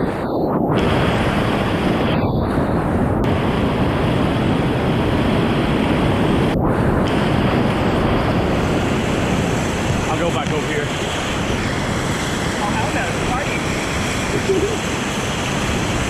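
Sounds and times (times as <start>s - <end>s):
rushing whitewater roar: 3.2s - 16.0s.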